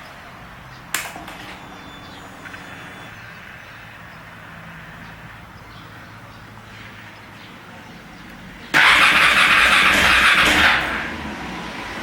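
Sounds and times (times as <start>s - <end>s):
motorcycle starter click: 8.8s - 11.0s.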